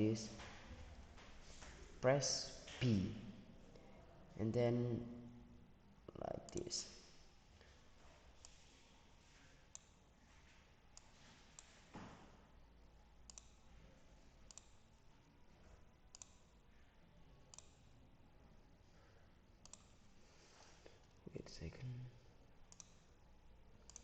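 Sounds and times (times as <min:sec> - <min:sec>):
faint computer mouse clicks: 0:13.3 - 0:13.6, 0:14.5 - 0:14.8, 0:19.6 - 0:20.0, 0:22.7 - 0:23.0.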